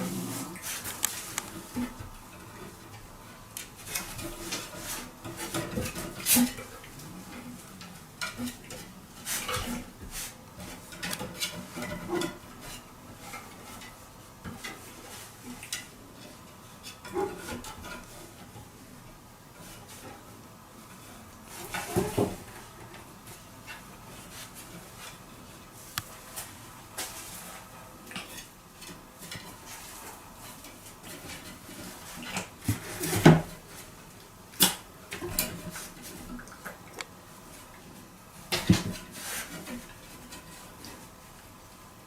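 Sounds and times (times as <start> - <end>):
household objects clattering: 0.0 - 18.6.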